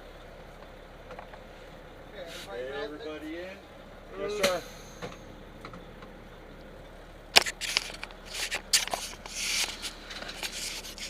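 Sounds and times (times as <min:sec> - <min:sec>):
sharp clicks and knocks: 0:07.4 - 0:11.0.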